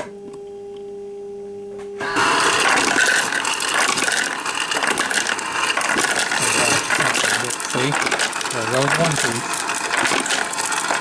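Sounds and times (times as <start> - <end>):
ice dispenser hum: 1.7 - 11.0
ice dispenser grinding rattle: 2.0 - 11.0
ice cubes clattering into cup: 2.2 - 11.0.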